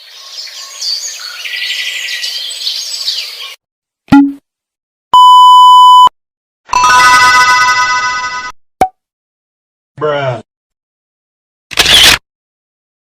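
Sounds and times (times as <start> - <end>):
birds chirping and singing: 0.0 - 3.6
electronic beep: 4.1 - 4.4, 5.2 - 6.1
falling bloop sound effect: 4.1 - 4.4.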